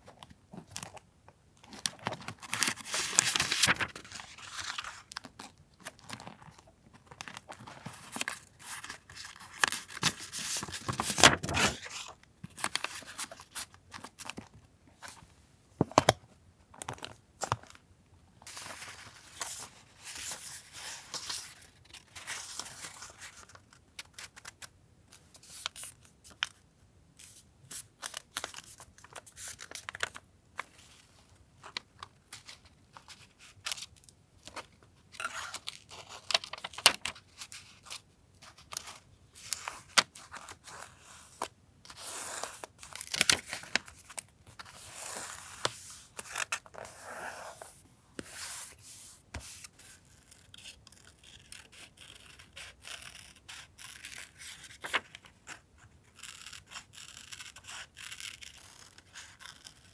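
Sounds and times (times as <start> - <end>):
paper crinkling: 1.7 - 13.4, 54.4 - 55.2
paper tearing: 2.6 - 4.7.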